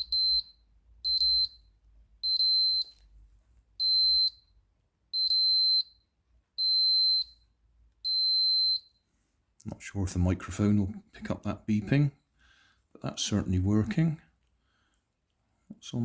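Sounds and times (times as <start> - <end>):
continuity tester beeping: 0.0 - 3.0, 3.8 - 4.5.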